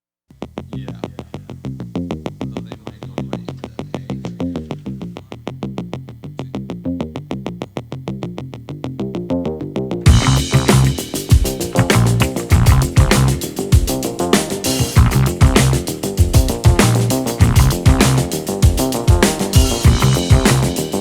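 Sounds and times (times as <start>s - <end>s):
drums: 0.3s - 5.7s, 10.0s - 21.0s
electronic synthesizer music: 10.1s - 21.0s.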